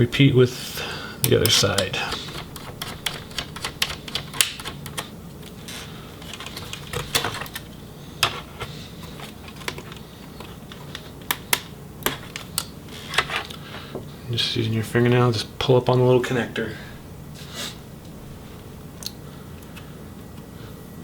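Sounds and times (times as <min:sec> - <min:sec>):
faint low steady hum: 0:00.0 - 0:21.0
screwdriver clicking on laptop chassis: 0:01.2 - 0:05.0.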